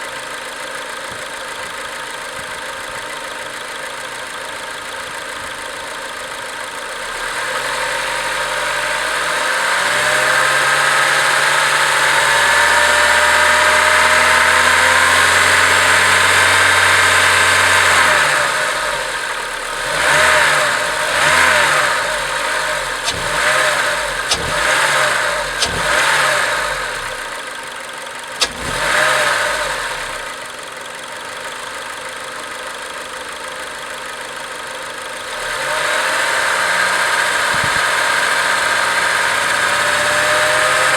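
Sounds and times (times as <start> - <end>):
car engine revving: 6.9 - 30.5, 35.2 - 40.9.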